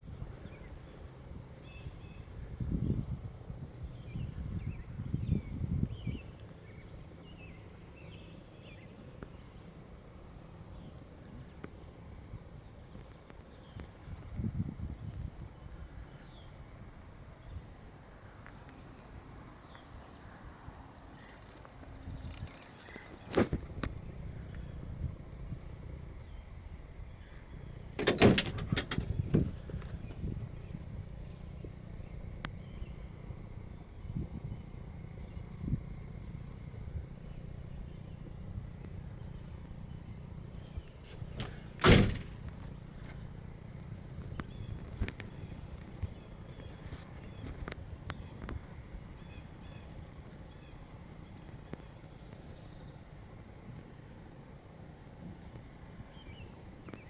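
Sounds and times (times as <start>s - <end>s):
car door slamming: 28.0s - 29.7s, 41.4s - 42.5s.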